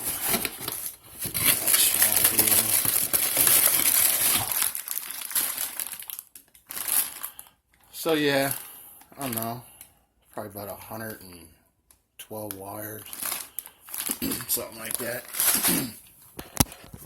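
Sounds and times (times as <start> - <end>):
packaging crinkling: 0.0 - 7.5, 12.6 - 17.0.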